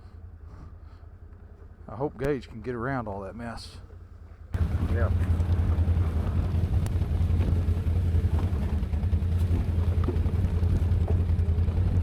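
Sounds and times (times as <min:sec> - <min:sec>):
quad engine running steadily: 0:04.6 - 0:12.0.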